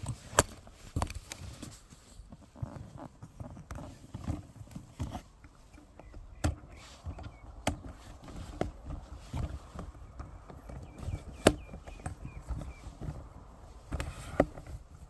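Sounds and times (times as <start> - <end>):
footsteps on a trail: 5.1 - 15.0.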